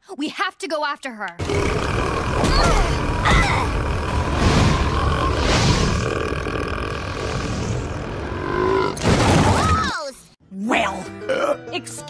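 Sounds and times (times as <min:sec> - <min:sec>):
long cartoon burp: 0:01.4 - 0:09.0, 0:11.3 - 0:11.6.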